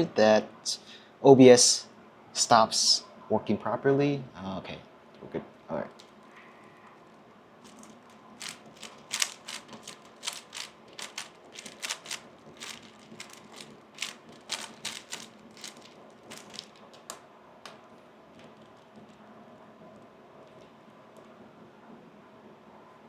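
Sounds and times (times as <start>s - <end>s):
plastic puzzle cube clicking: 7.7s - 17.2s.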